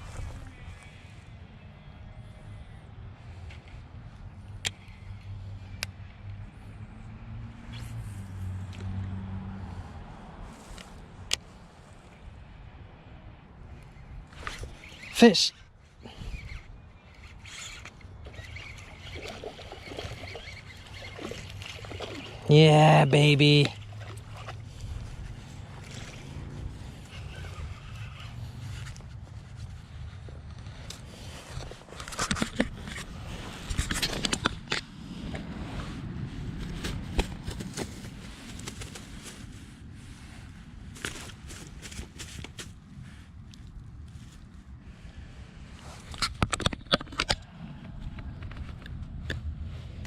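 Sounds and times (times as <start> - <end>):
fishing reel cranking: 16.1 - 22.5, 27.0 - 28.3
water splashing and churning: 18.2 - 27.8
wind rumble on microphone: 23.8 - 50.0.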